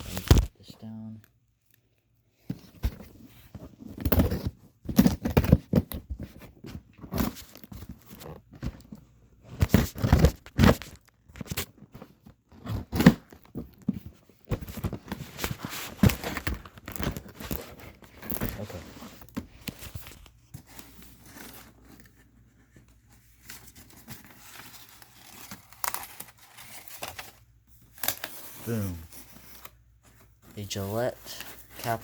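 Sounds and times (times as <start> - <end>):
cardboard tearing and crinkling: 14.6 - 22.1, 23.4 - 29.8, 30.6 - 32.0.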